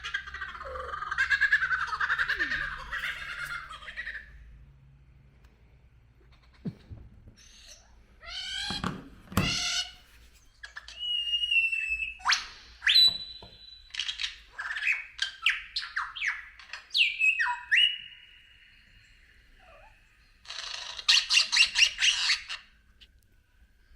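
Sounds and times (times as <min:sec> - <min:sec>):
harsh bird calls: 0:06.3 - 0:23.1
whistled bird notes: 0:10.8 - 0:20.1.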